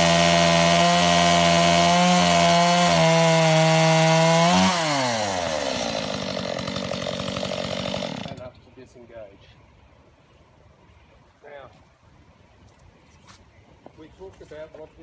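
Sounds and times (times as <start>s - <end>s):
chainsaw engine revving: 0.0s - 8.6s.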